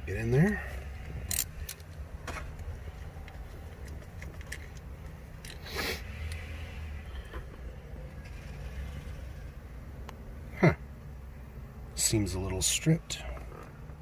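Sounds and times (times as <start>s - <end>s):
low steady hum: 0.0s - 14.0s
ratchet clicking: 1.2s - 1.9s.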